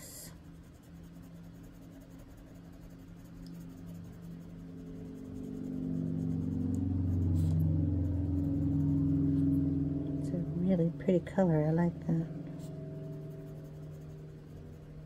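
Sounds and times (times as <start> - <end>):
pencil rubbing on paper: 0.0 - 9.5, 12.6 - 15.0
low droning hum: 0.0 - 15.0.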